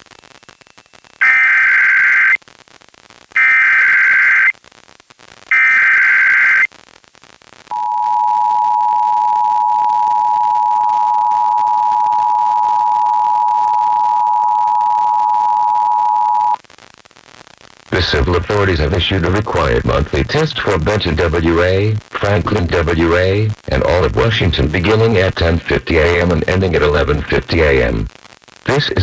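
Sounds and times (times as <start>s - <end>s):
screechy digital data tones: 1.2s - 2.4s, 3.4s - 4.5s, 5.5s - 6.7s
two-tone attention signal: 7.7s - 16.6s.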